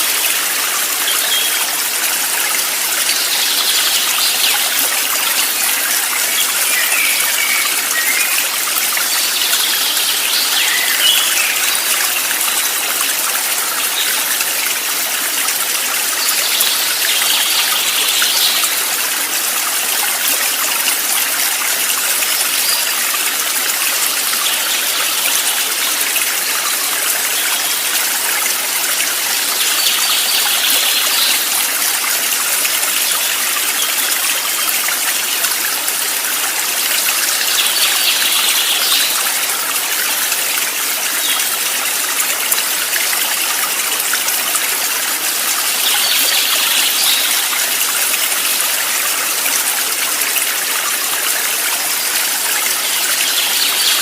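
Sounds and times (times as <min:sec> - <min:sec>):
stream flowing: 0:00.0 - 0:54.0.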